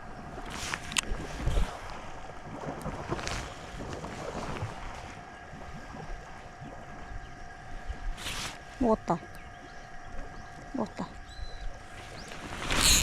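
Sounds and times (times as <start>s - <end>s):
water noise: 0.0s - 13.0s
sharp clicks: 12.6s - 13.0s.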